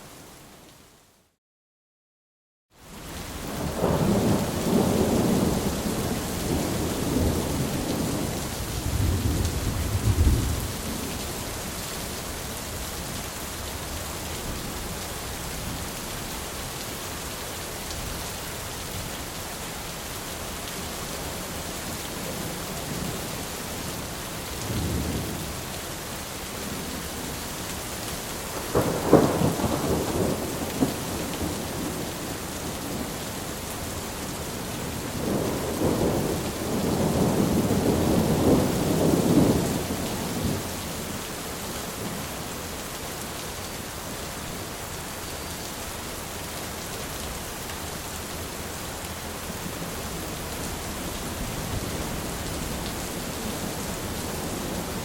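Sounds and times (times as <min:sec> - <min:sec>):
heavy rain: 0:02.8 - 0:55.0
rolling thunder: 0:03.6 - 0:11.1, 0:28.5 - 0:32.2.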